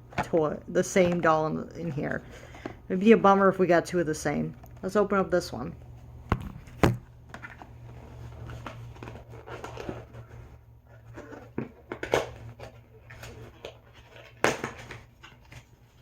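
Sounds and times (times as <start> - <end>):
packaging rustling: 6.5 - 16.0.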